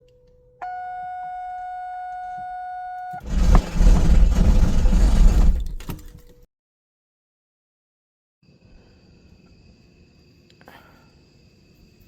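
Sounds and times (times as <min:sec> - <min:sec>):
starter motor grinding: 0:03.2 - 0:06.2.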